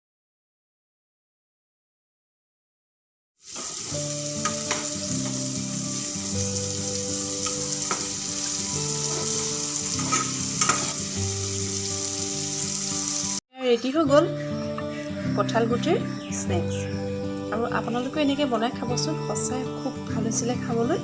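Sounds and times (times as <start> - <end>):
food sizzling in oil: 3.4 - 13.4
soft background music: 3.8 - 21.0
spatula scraping pan: 7.4 - 11.1.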